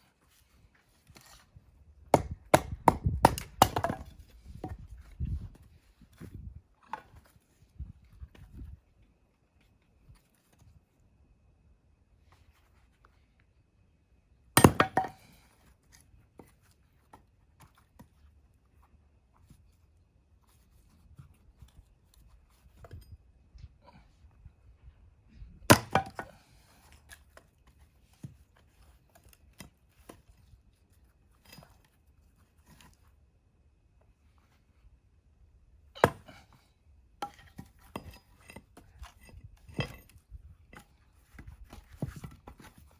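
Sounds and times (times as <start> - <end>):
axe splitting firewood: 2.0 - 5.6, 14.6 - 15.5, 25.6 - 27.5, 36.0 - 42.9.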